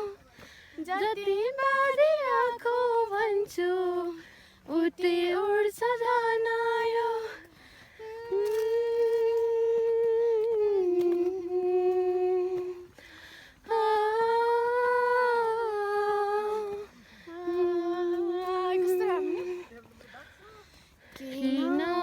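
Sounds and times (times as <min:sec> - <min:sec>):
woman humming: 0:08.0 - 0:12.9, 0:16.3 - 0:19.7.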